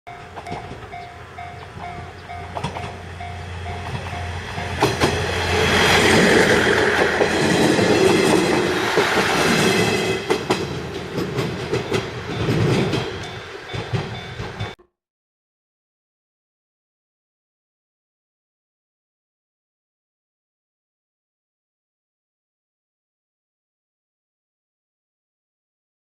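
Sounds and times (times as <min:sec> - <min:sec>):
level crossing warning bell: 0:00.1 - 0:05.4, 0:11.8 - 0:14.8
train passing: 0:00.1 - 0:14.8
wheels clicking over rail joints: 0:00.1 - 0:14.8.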